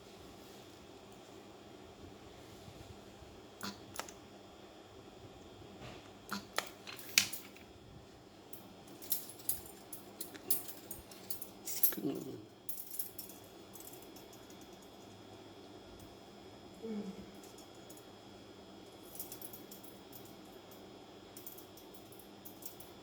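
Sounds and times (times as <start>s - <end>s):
metallic clicks and clinks: 21.4s - 23.0s.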